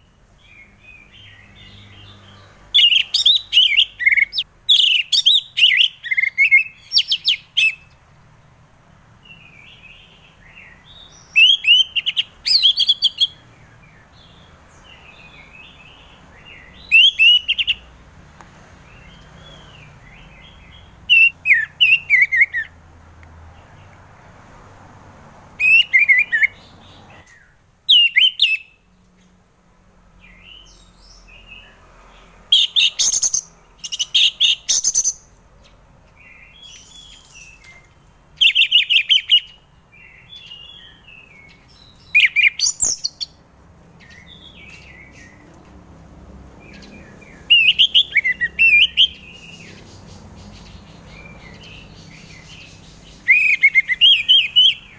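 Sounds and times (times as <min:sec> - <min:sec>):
soft bird twittering: 0:00.0 - 0:08.0, 0:09.2 - 0:17.9, 0:18.8 - 0:22.8, 0:25.6 - 0:29.4, 0:30.2 - 0:45.5, 0:46.6 - 0:54.9
thrush whistled song: 0:10.9 - 0:13.4, 0:16.5 - 0:17.8, 0:21.1 - 0:22.7, 0:25.6 - 0:26.6, 0:27.2 - 0:28.8, 0:47.3 - 0:54.9.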